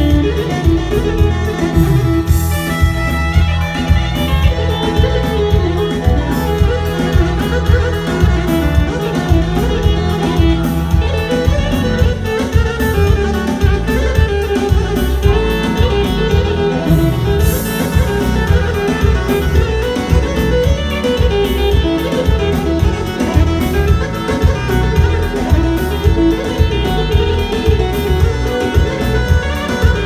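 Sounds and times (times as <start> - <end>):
band playing dance tune: 0.0 - 30.0
violin-like melody: 0.0 - 30.0.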